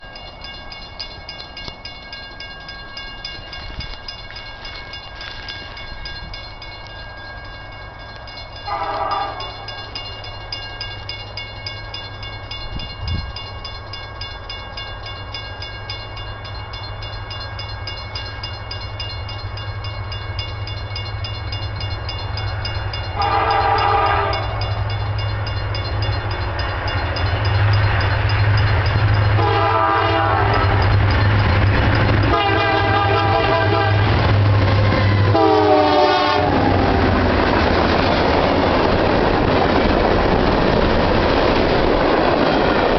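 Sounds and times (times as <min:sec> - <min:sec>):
diesel locomotive rumble: 0:00.1 - 0:42.9
locomotive air horn blasts: 0:08.7 - 0:09.6, 0:23.2 - 0:24.6, 0:29.4 - 0:30.8, 0:32.3 - 0:37.0.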